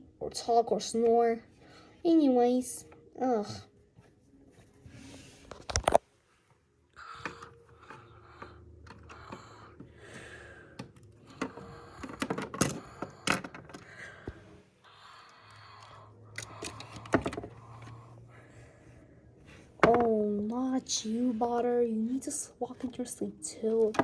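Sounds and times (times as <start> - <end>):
plastic toys clicking and tapping: 7.2 - 14.0, 15.5 - 17.9, 23.8 - 24.0.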